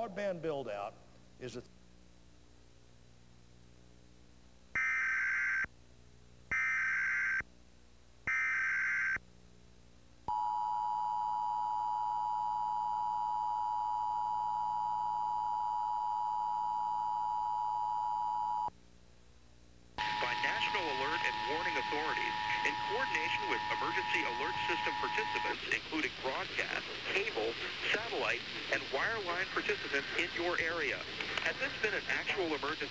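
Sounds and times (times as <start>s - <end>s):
buzzy digital data bursts: 20.0s - 32.9s.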